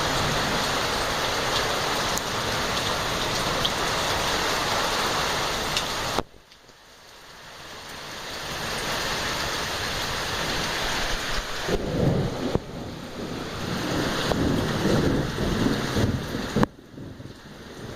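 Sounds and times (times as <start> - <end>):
heavy rain: 0.0 - 17.9
low rumbling: 11.2 - 17.9.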